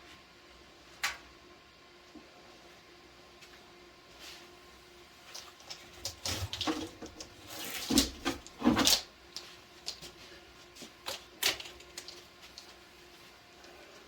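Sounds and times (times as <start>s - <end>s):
objects clicking and rattling: 11.0s - 12.8s.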